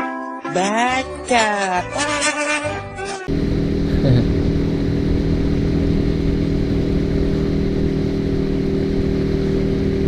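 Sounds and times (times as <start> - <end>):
motorcycle engine running steadily: 3.3 - 10.0.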